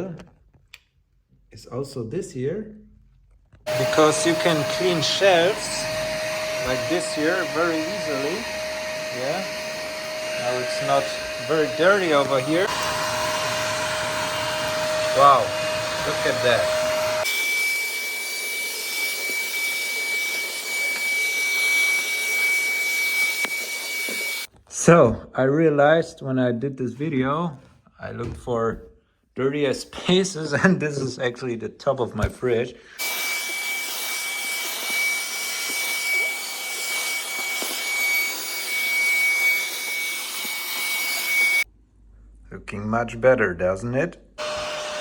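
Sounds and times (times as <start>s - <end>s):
vacuum cleaner whining: 3.7s - 24.5s, 33.0s - 41.7s, 44.4s - 45.0s.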